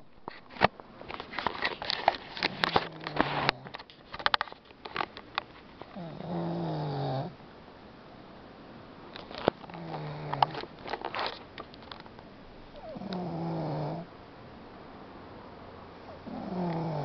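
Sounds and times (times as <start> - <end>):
dog snoring: 5.9 - 7.4, 9.7 - 10.6, 12.7 - 14.1, 16.0 - 17.0.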